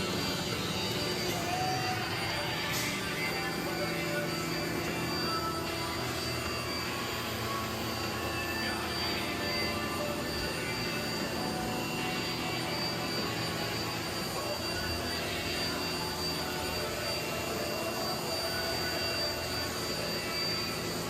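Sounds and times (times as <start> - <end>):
machinery hum and whine: 0.0 - 21.0.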